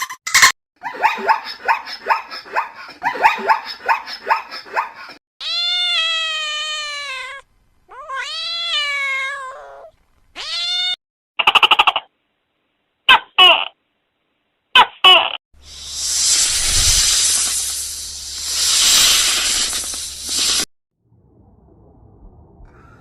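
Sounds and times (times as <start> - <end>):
cat meowing: 5.4 - 11.0.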